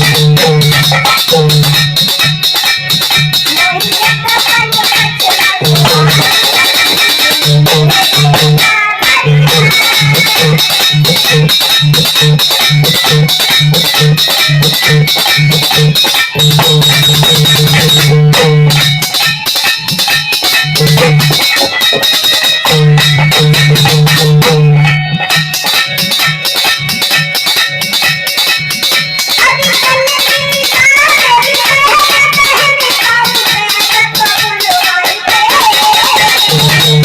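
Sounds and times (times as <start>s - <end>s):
repeating bass note: 0.0s - 2.0s, 5.6s - 6.4s, 7.4s - 19.1s, 20.8s - 21.5s, 22.6s - 25.2s
fast percussion beat: 0.0s - 37.0s.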